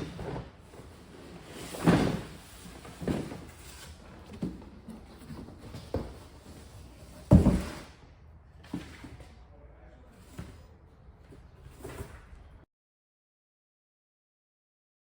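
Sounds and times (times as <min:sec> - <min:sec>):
cardboard box knocks and scuffs: 0:07.2 - 0:07.9
cardboard box heavy thump: 0:07.3 - 0:07.9.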